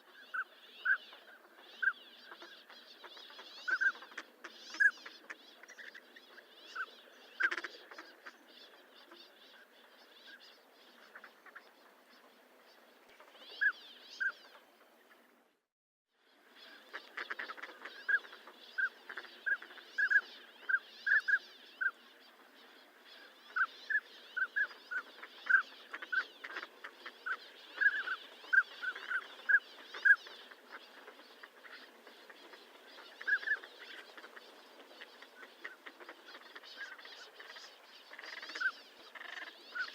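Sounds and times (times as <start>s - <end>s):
ducks whistling calls: 0.0s - 11.7s, 16.5s - 22.1s, 23.2s - 39.9s.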